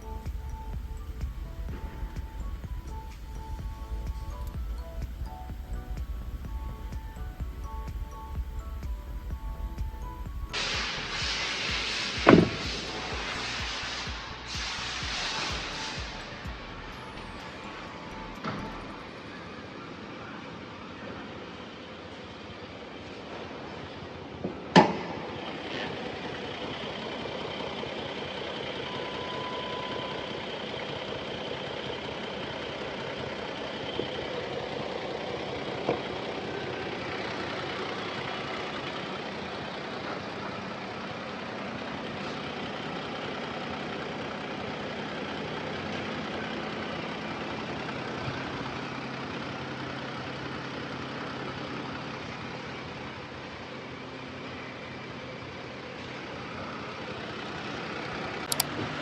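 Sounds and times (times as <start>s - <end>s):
car engine idling: 0.0s - 59.0s
sharp clicks: 58.4s - 58.8s.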